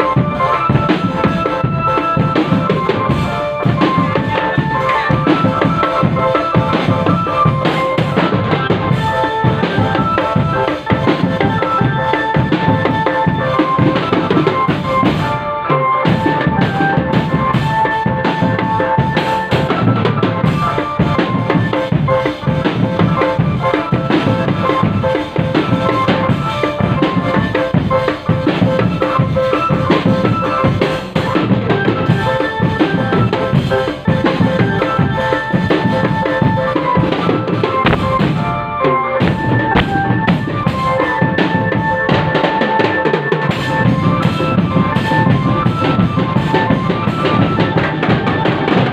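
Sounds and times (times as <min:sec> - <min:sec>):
snare and bass drums beating: 0:00.0 - 0:15.4, 0:16.0 - 0:38.6, 0:39.2 - 0:48.9
melody of held notes: 0:00.0 - 0:48.9.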